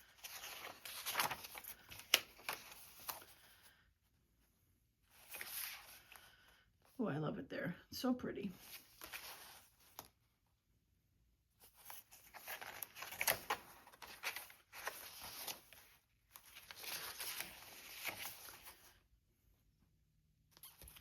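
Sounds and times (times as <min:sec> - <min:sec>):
paper rustling and scraping: 0:00.0 - 0:03.6, 0:05.1 - 0:06.3, 0:08.6 - 0:10.1, 0:11.6 - 0:19.0.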